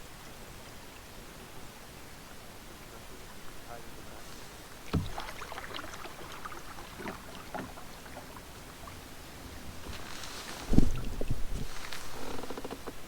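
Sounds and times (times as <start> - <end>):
paddles knocking against canoe: 4.4 - 13.0
water splashing and dripping: 4.7 - 12.0
heavy thump: 4.9 - 5.2.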